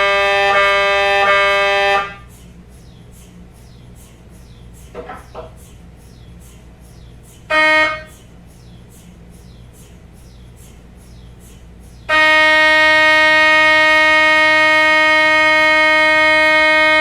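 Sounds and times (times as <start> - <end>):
mri scanner buzzing tone: 0.0 - 5.2
mri scanner chirping: 0.0 - 14.8.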